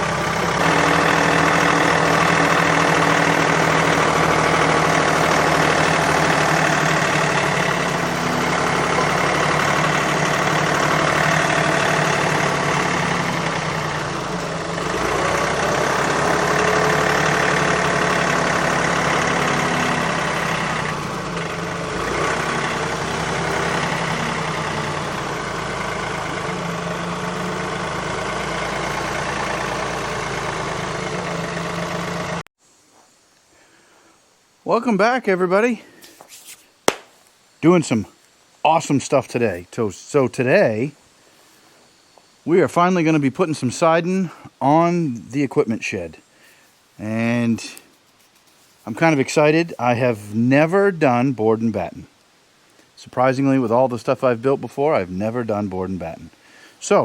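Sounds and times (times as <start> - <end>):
engine idling: 0.0 - 32.4, 46.5 - 50.8.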